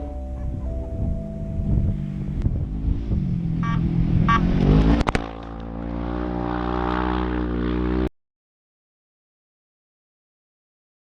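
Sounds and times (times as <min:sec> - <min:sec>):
race vehicle engine revving: 0:00.2 - 0:08.1.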